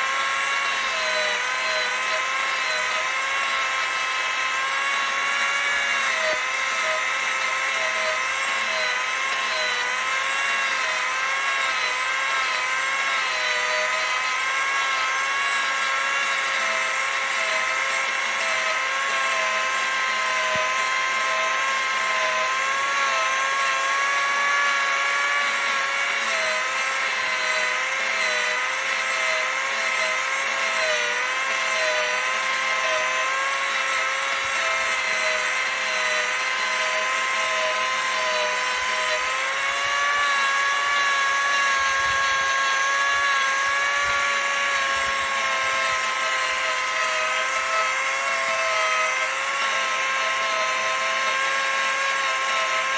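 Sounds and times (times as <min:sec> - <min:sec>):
angle grinder carving wood: 0:00.0 - 0:52.9.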